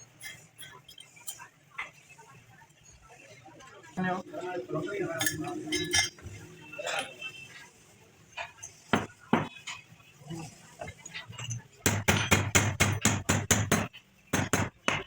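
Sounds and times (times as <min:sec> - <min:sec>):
hammer striking metal: 0:08.9 - 0:09.6, 0:11.9 - 0:15.0.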